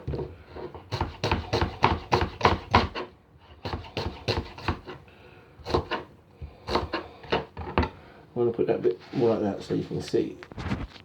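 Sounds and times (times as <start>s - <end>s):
knife slicing onion on board: 0.0s - 5.0s, 5.6s - 7.8s.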